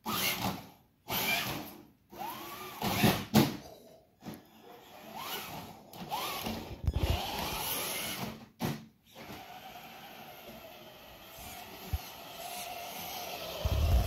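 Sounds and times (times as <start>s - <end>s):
electric motor whining: 5.0s - 8.2s, 9.2s - 14.0s.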